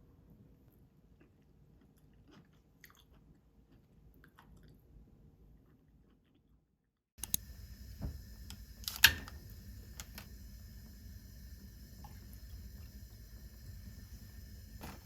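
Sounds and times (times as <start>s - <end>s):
steady low hum: 7.2s - 15.0s.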